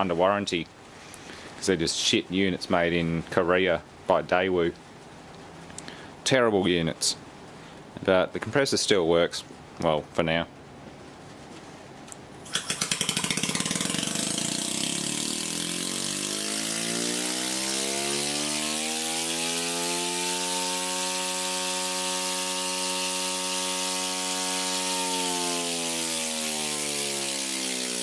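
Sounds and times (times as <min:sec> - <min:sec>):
compressor clattering and humming: 0:12.4 - 0:16.8.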